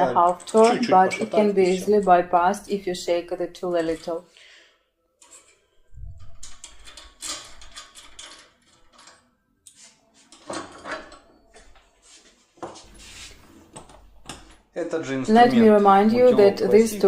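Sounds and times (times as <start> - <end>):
metal clicks and scraping in lock: 5.2 - 11.3.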